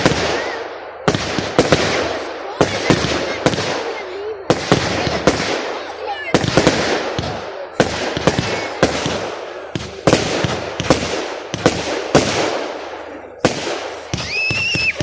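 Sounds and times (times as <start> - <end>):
firework bangs: 0.0 - 15.0
firework crackle: 0.0 - 15.0
high whistle: 14.2 - 15.0.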